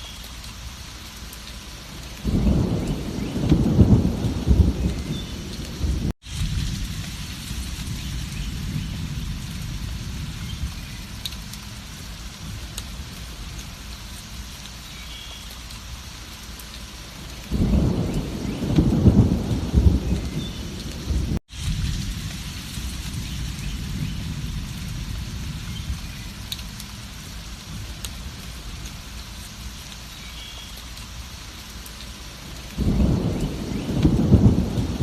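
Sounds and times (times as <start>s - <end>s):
heavy rain falling: 0.0s - 35.0s
thunder rumbling: 2.2s - 13.9s, 17.4s - 29.2s, 32.4s - 35.0s.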